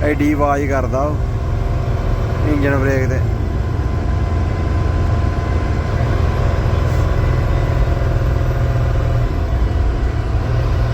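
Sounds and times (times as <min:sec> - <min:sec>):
truck engine brake drone: 0:03.2 - 0:10.9.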